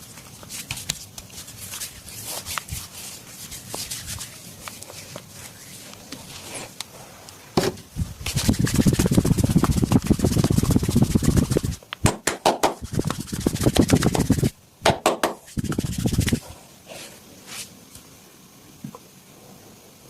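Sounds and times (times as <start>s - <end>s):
hands rubbing in massage: 0.2s - 7.3s, 8.2s - 11.8s, 12.6s - 14.5s, 15.2s - 17.8s.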